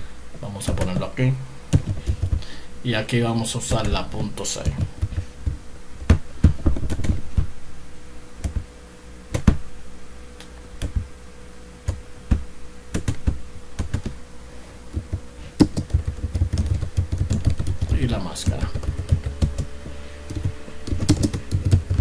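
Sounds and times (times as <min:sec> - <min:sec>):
keyboard typing: 0:01.7 - 0:02.4, 0:06.1 - 0:07.2, 0:13.0 - 0:14.1, 0:14.9 - 0:22.0.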